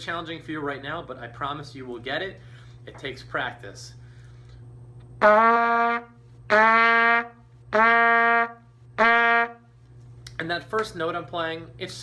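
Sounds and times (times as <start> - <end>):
trumpet playing low notes: 5.2 - 9.6.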